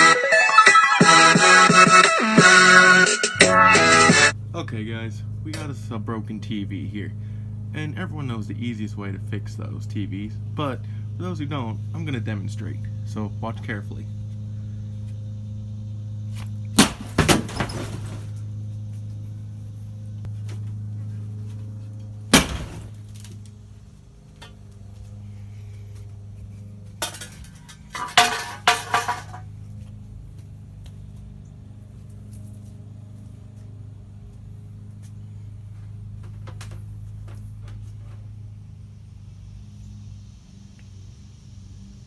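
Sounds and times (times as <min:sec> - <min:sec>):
steady low hum: 0:03.4 - 0:42.0
television being smashed: 0:16.8 - 0:18.3, 0:22.3 - 0:23.3, 0:28.0 - 0:29.4.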